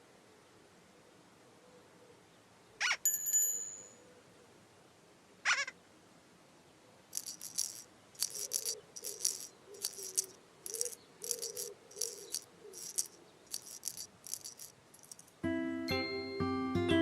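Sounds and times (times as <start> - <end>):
shaker rattles: 7.1 - 15.4.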